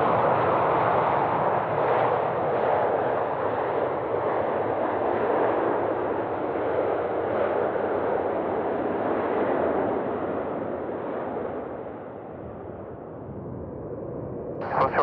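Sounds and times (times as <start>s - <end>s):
jet engines rumbling: 10.4s - 15.0s.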